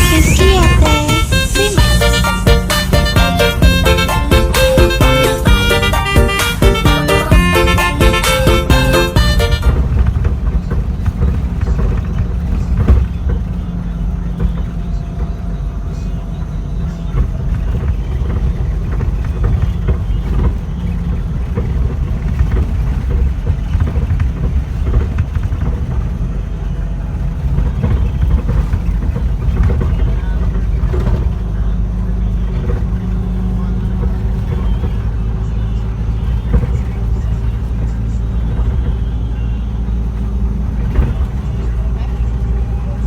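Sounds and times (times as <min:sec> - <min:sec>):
bus engine rumbling: 0:00.0 - 0:43.0.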